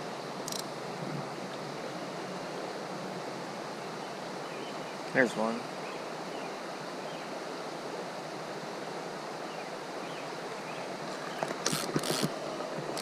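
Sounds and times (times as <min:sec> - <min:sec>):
creek water rushing: 0:00.0 - 0:13.0
short bursts of noise: 0:11.4 - 0:13.0.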